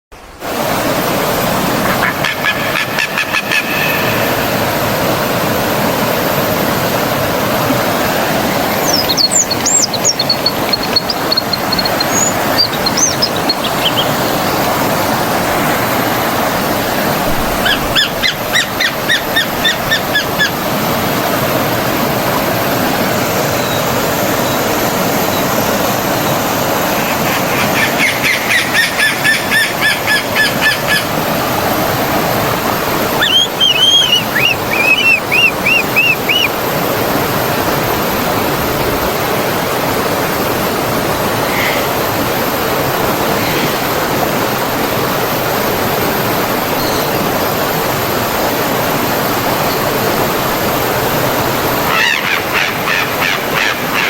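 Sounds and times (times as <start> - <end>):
stream water running: 0.3 - 54.0
birds calling rapid notes: 8.1 - 15.3, 17.6 - 20.8, 32.8 - 36.8
high whistled bird notes: 8.7 - 14.6, 33.1 - 36.6.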